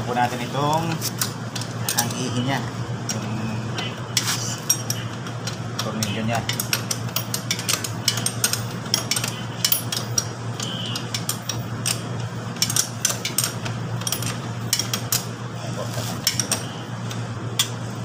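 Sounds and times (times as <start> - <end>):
steady low hum: 0.0 - 18.0
hand tools clicking on metal: 4.2 - 17.8.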